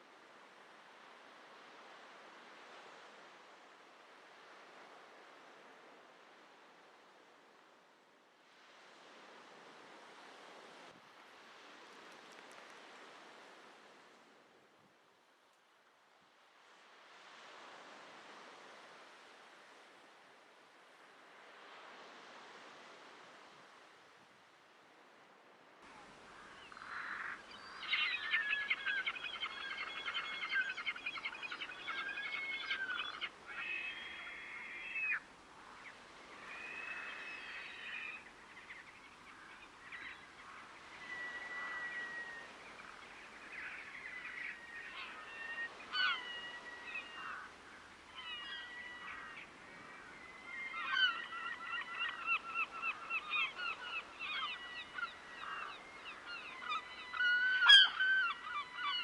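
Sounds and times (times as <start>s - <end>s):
water birds honking: 26.1s - 35.2s, 43.5s - 59.0s.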